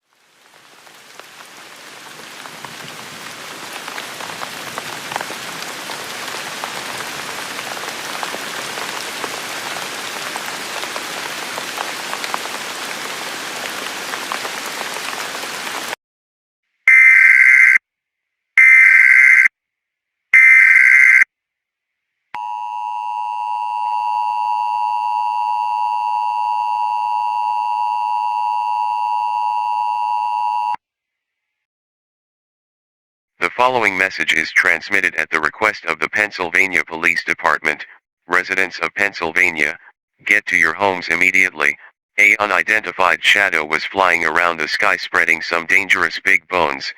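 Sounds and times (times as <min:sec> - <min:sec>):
rain: 0:00.0 - 0:16.0
data burst tones: 0:20.4 - 0:21.2
two-tone alert tone: 0:22.4 - 0:30.8.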